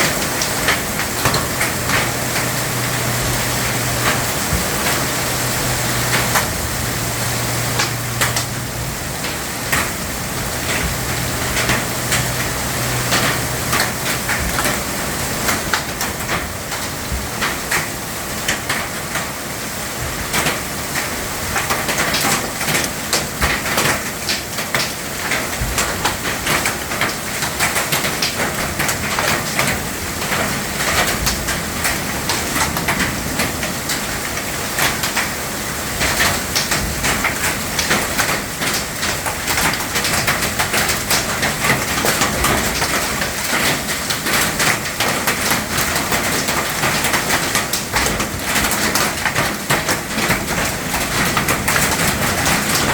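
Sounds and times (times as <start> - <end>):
hail pelting down: 0.0 - 52.9
rain falling: 0.0 - 52.9.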